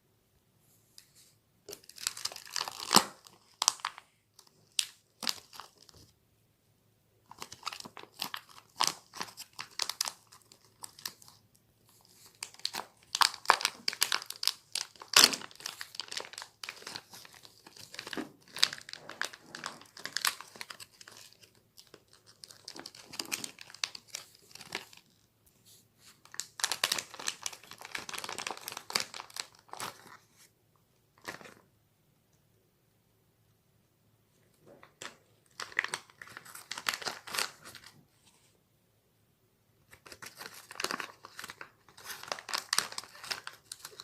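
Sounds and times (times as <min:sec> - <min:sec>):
plastic wrapping crinkling: 0:01.7 - 0:06.0, 0:07.3 - 0:25.2, 0:26.1 - 0:30.3, 0:34.8 - 0:38.0, 0:39.9 - 0:44.0.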